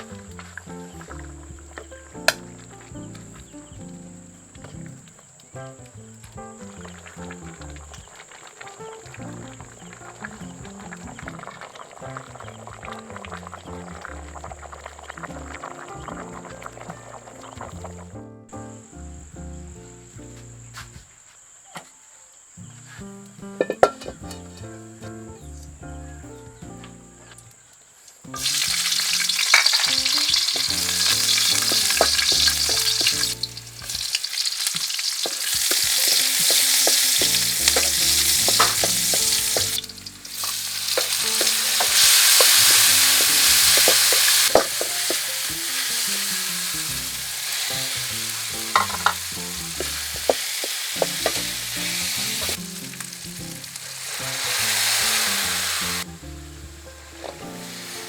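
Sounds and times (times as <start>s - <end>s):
food sizzling in hot oil: 0.0s - 18.1s, 28.2s - 58.0s
utensil scraping a pan: 28.4s - 46.3s, 47.0s - 56.0s.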